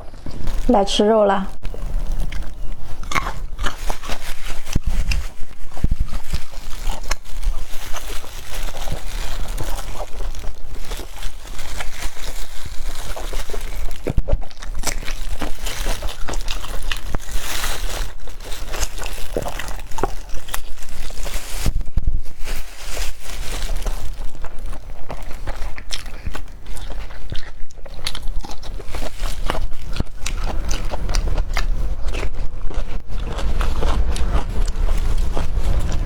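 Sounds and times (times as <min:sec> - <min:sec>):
chewing and eating food: 0:00.0 - 0:36.0.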